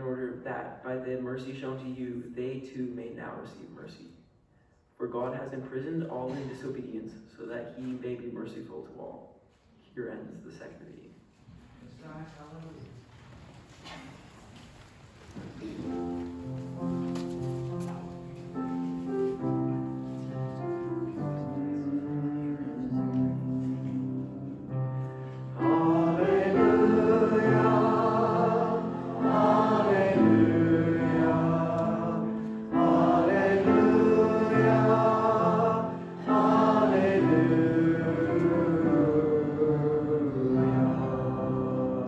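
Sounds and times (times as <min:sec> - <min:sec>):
held instrumental chords: 0:16.0 - 0:41.8
choir singing: 0:18.5 - 0:42.0.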